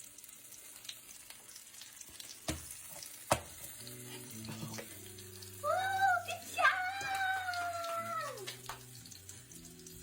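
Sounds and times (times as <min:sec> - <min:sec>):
batter sizzling in a pan: 0:00.0 - 0:10.0
utensil knocking against pan: 0:03.3 - 0:03.6.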